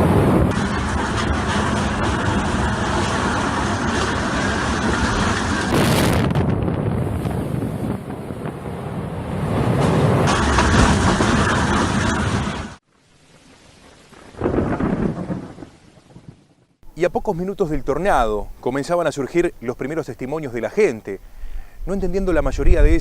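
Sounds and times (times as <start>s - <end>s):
strong wind buffeting microphone: 0.0s - 12.8s, 21.2s - 23.0s.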